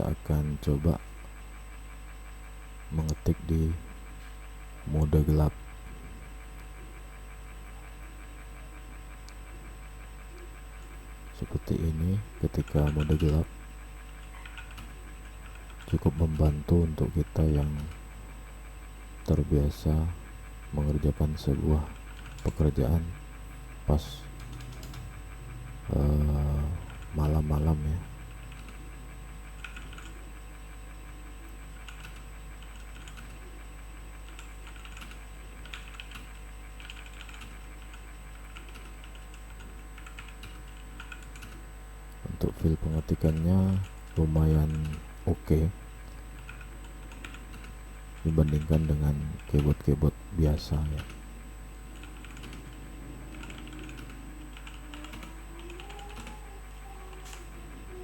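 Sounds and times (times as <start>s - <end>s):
low electrical hum: 0.0s - 58.0s
mechanical keyboard typing: 12.5s - 13.5s, 14.2s - 16.3s, 24.4s - 25.2s, 26.8s - 28.8s, 29.6s - 30.2s, 31.8s - 33.4s, 34.3s - 41.6s, 46.4s - 49.9s, 51.9s - 58.0s.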